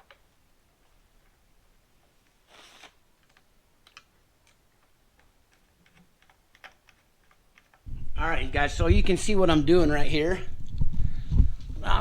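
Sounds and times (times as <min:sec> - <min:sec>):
small parts clicking and tapping: 0:03.2 - 0:07.9.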